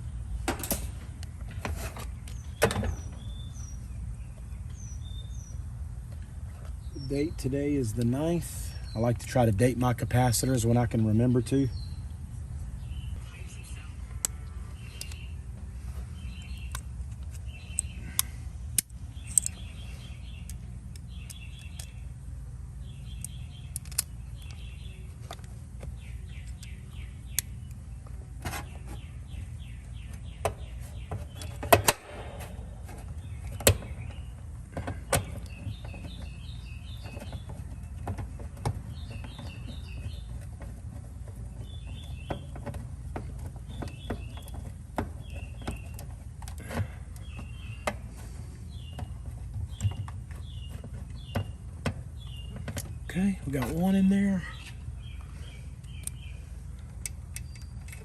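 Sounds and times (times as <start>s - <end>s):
songbird chirping: 0.0s - 58.0s
steady low hum: 0.0s - 58.0s
sharp clicks and knocks: 16.4s - 22.0s, 23.0s - 48.2s, 48.8s - 54.8s.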